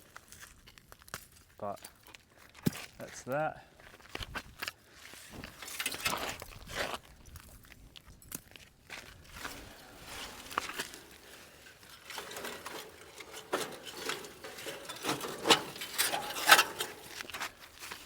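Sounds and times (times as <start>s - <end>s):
scraping and knocking of scrap metal: 5.4s - 6.4s, 9.3s - 18.0s.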